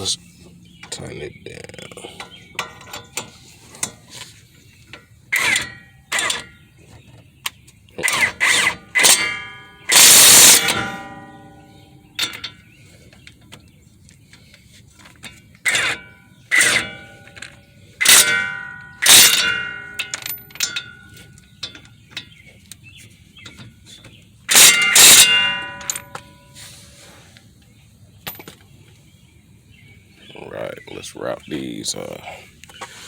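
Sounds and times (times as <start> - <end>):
metal tools clanking: 0.8 - 7.1, 8.0 - 13.6, 14.4 - 26.6.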